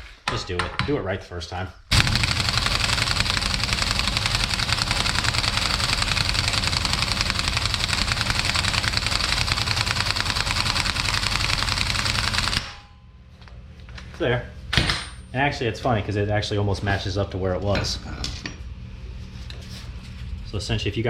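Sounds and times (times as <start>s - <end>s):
impact wrench hammering: 1.9s - 12.9s.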